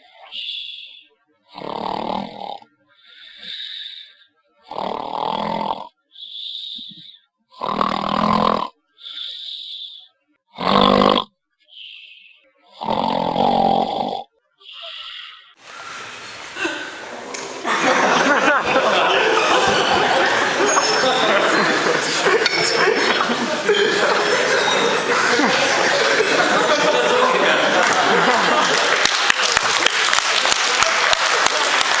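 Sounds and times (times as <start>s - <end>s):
person snoring loudly: 1.5s - 4.0s, 4.7s - 6.0s, 7.6s - 9.4s, 10.5s - 11.3s, 12.7s - 15.2s.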